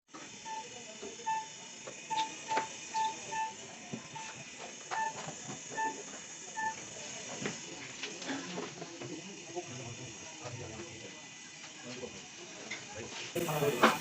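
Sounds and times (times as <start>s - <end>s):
gas torch flame hissing: 0.1s - 14.0s
short high-pitched chirps: 0.4s - 1.5s, 2.1s - 3.6s.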